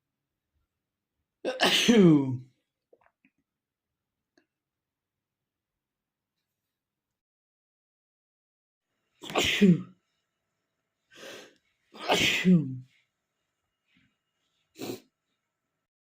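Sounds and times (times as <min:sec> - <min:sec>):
man sneezing: 0:01.5 - 0:02.4, 0:09.2 - 0:10.0, 0:12.0 - 0:12.9
quiet breath: 0:11.0 - 0:11.9.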